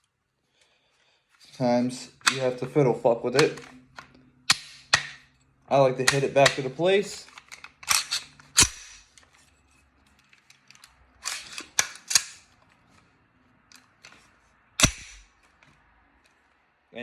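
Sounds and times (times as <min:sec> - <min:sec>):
metal clicks of rifle parts: 0:02.2 - 0:05.2, 0:06.0 - 0:09.4, 0:10.1 - 0:12.6, 0:13.7 - 0:16.4.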